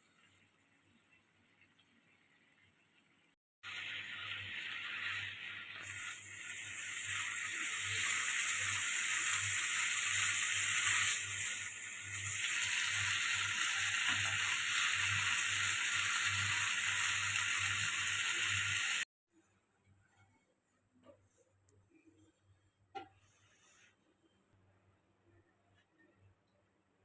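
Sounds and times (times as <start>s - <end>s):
food frying sizzle: 0.0s - 19.1s.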